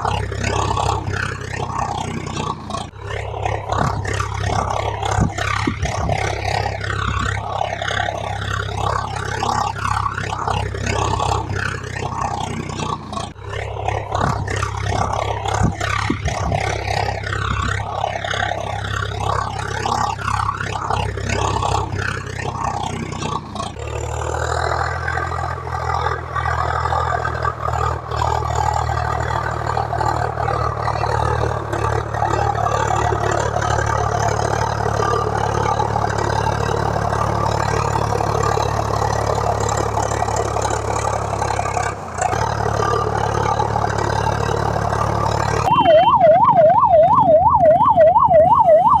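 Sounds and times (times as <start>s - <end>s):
electronic siren wailing: 45.6s - 49.0s.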